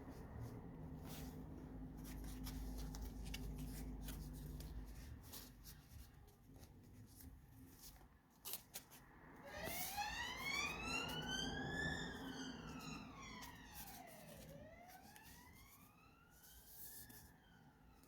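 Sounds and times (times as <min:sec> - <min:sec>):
low room rumble: 0:00.0 - 0:08.3
paper pages rustling: 0:00.1 - 0:09.1, 0:13.3 - 0:17.4
siren wailing: 0:09.4 - 0:18.0.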